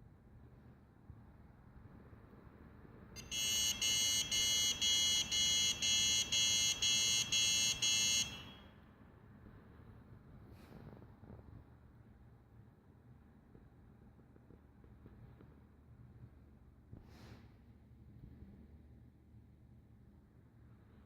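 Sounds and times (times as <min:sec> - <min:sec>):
high buzzer beeps: 0:03.2 - 0:08.7.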